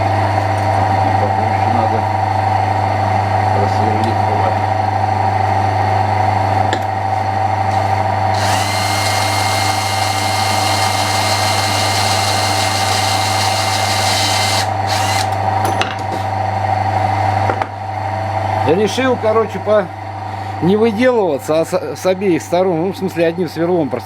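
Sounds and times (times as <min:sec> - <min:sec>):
motor hum: 0:00.0 - 0:24.0
power drill cutting with whine: 0:08.3 - 0:15.4.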